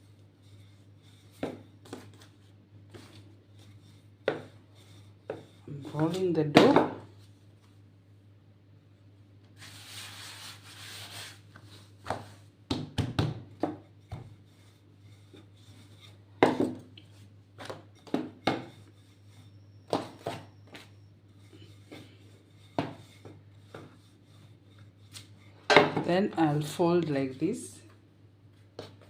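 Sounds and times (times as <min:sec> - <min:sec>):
rolling pin swishing on dough: 0:00.0 - 0:06.4, 0:09.5 - 0:12.6, 0:13.6 - 0:16.3, 0:17.0 - 0:25.7.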